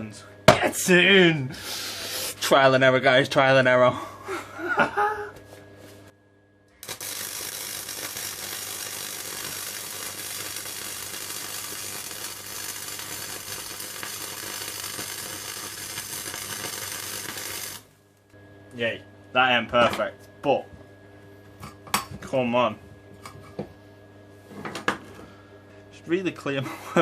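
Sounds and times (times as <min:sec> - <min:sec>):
welder arc crackling sizzle: 0:06.1 - 0:21.7.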